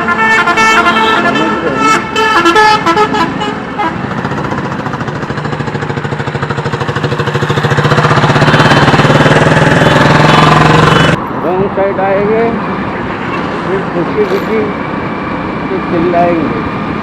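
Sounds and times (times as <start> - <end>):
vehicle engine running: 3.4 - 11.2.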